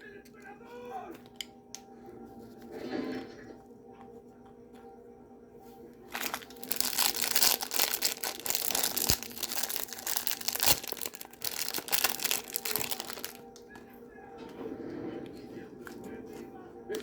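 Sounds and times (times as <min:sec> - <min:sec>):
plastic packaging crinkling and tearing: 0:06.1 - 0:13.8.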